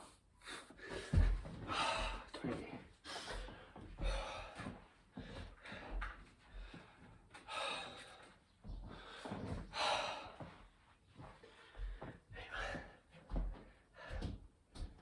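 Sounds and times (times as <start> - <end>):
man breathing hard and gasping: 0.0 - 10.6, 11.4 - 13.1, 13.7 - 14.4
body thudding on floor: 1.0 - 2.2.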